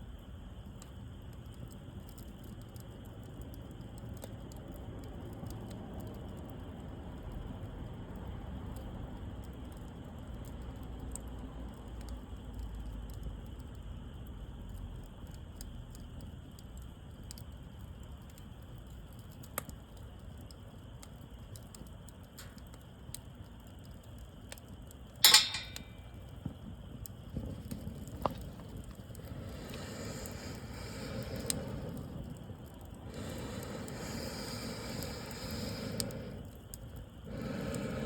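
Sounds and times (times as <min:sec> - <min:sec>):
wood fire crackling: 0:00.0 - 0:38.0
low steady rumble: 0:24.9 - 0:38.0
fire popping sharply: 0:25.0 - 0:38.0.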